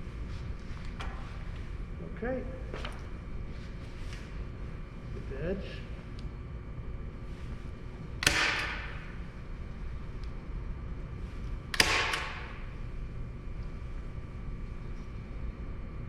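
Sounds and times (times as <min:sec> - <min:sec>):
staple gun firing: 0:08.2 - 0:09.1, 0:11.7 - 0:12.7.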